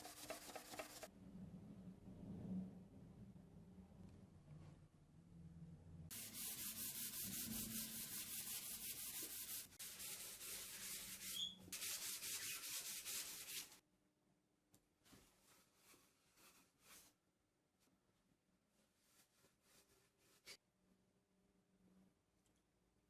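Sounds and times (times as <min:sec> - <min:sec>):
sandpaper rubbing on wood: 0:06.1 - 0:13.8.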